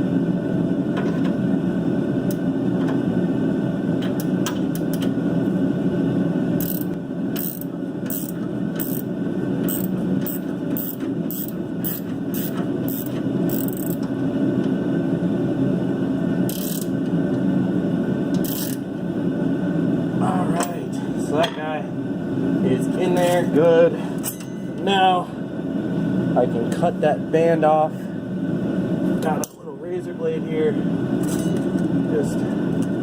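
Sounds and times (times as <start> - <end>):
hand ratchet clicking: 6.6 - 9.1, 9.7 - 14.1, 18.4 - 18.8.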